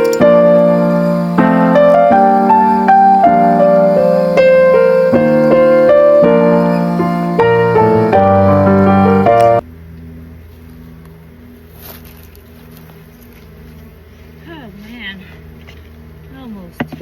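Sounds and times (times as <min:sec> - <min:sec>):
slow piano melody: 0:00.0 - 0:09.7.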